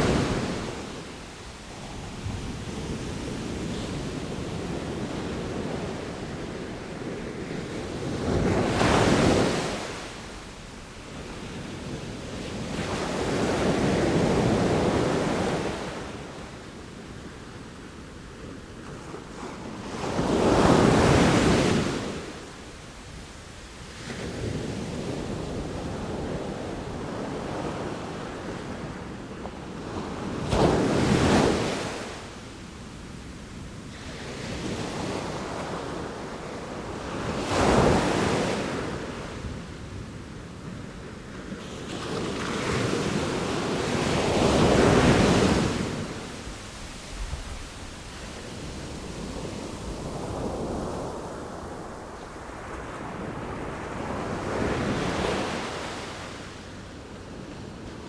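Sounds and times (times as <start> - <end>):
surf washing: 41.6 - 56.9.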